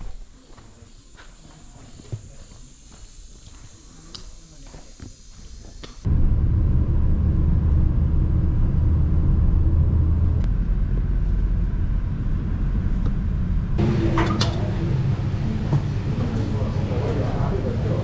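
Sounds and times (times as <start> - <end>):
car engine and road rumble: 6.1 - 18.0
higher hum: 6.1 - 18.0.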